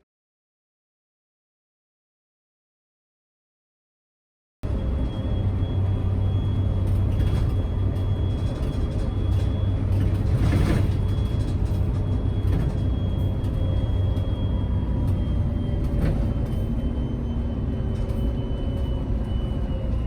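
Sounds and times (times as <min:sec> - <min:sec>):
low vehicle rumble: 0:04.6 - 0:20.0.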